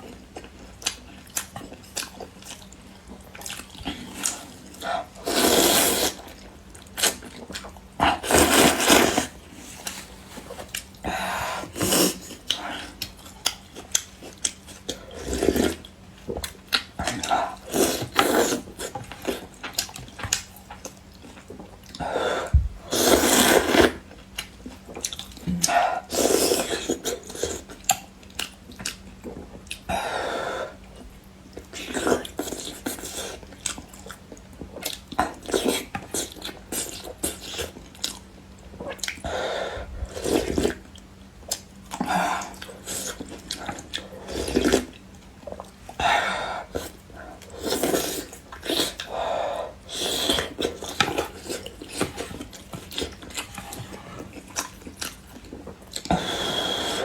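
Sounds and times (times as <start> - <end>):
loud slurps: 5.2 - 6.3, 8.2 - 9.4, 22.8 - 24.0
wet chewing: 11.7 - 22.0, 49.8 - 57.0.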